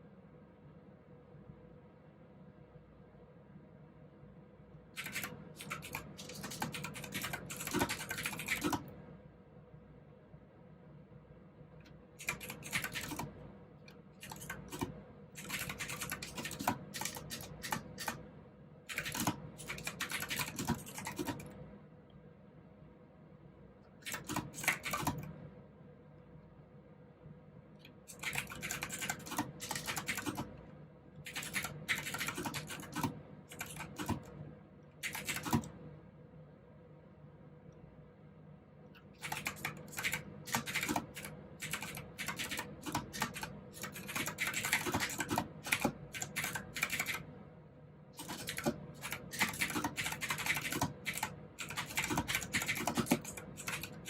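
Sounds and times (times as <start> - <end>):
mechanical keyboard typing: 5.0 - 9.0, 12.2 - 13.4, 14.2 - 18.2, 18.9 - 21.6, 24.0 - 25.4, 28.1 - 30.6, 31.2 - 34.4, 35.0 - 35.8, 39.2 - 47.3, 48.2 - 54.0.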